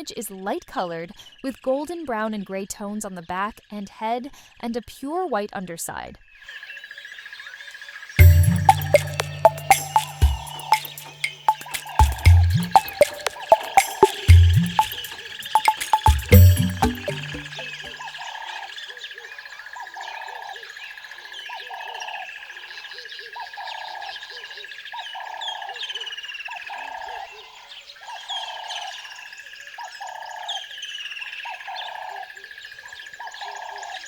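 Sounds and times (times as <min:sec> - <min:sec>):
steady high-pitched tone: 0:08.2 - 0:18.0.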